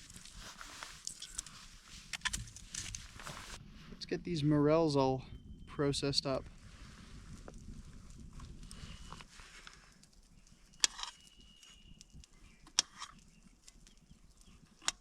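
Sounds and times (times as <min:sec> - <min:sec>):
brief rustle: 0:00.0 - 0:03.6.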